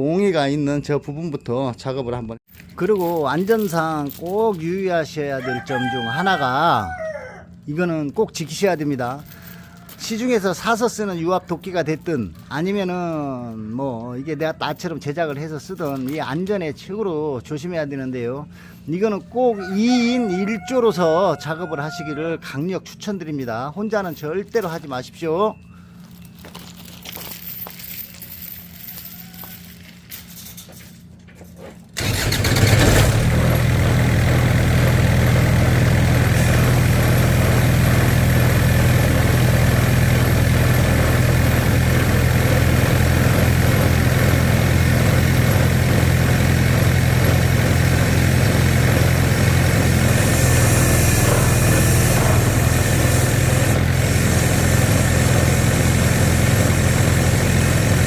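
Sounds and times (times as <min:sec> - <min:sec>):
diesel engine running: 0:32.0 - 0:58.0.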